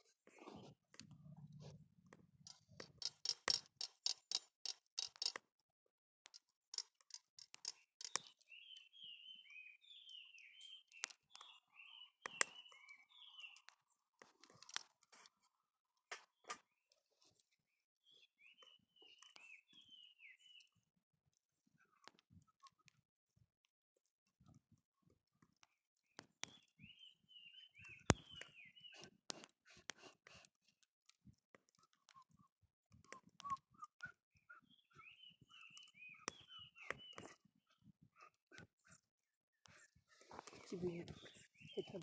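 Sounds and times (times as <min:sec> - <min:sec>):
campfire crackling and popping: 0:06.4 - 0:08.4
bird chirping: 0:06.8 - 0:14.0, 0:18.0 - 0:20.8, 0:26.0 - 0:29.2, 0:31.8 - 0:39.0, 0:39.7 - 0:42.0.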